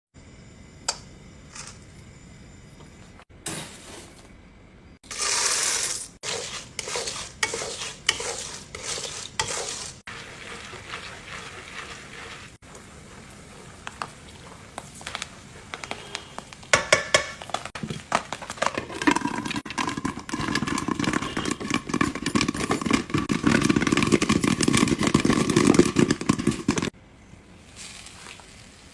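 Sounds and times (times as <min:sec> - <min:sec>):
popcorn popping: 0:05.0 - 0:26.9.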